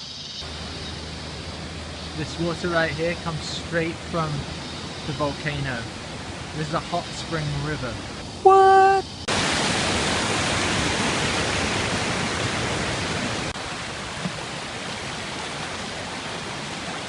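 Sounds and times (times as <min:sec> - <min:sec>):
river water rushing: 0:03.6 - 0:07.4, 0:08.0 - 0:17.0.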